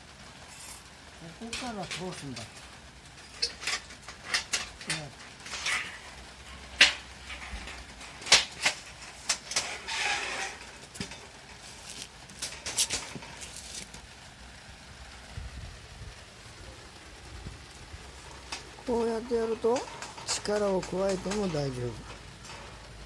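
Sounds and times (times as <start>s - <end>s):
metal scraping: 0.4s - 14.0s, 18.0s - 23.0s
metal parts clinking: 1.5s - 14.0s, 18.4s - 23.0s.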